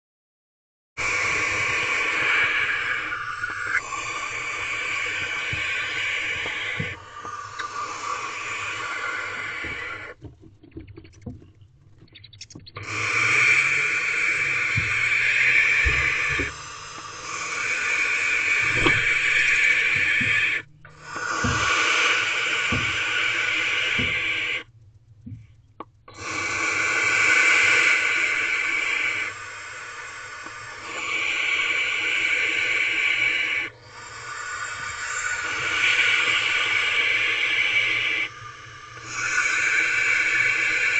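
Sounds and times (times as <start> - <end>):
owls hissing: 1.0 - 11.4, 12.0 - 24.7, 26.1 - 40.9
low thumps in nest box: 9.6 - 13.5, 14.4 - 16.6, 18.6 - 21.9.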